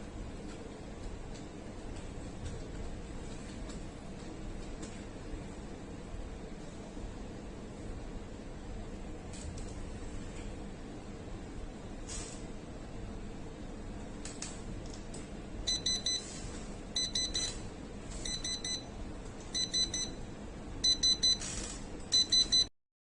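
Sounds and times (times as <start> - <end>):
high-pitched alarm beeps: 15.7 - 16.4, 17.0 - 17.6, 18.2 - 18.9, 19.5 - 22.7.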